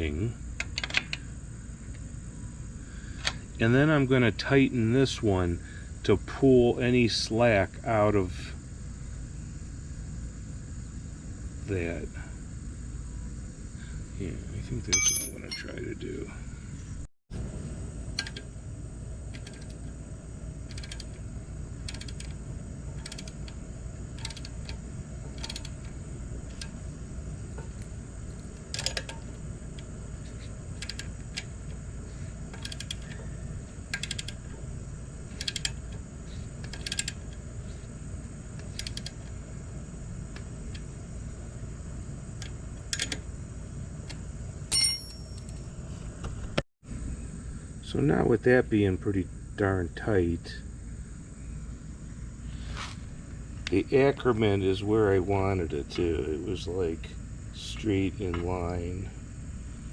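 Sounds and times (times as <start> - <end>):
low hum: 12.2 - 42.8
ringing metal clink: 14.9 - 15.8, 44.7 - 45.6
wrench clicking: 19.3 - 19.8, 20.7 - 21.2, 21.9 - 22.4, 23.0 - 23.6, 24.2 - 25.9, 26.5 - 26.8, 28.7 - 29.3, 30.8 - 31.5, 32.5 - 33.2, 33.9 - 34.5, 35.3 - 35.8, 36.6 - 37.4, 38.6 - 39.3.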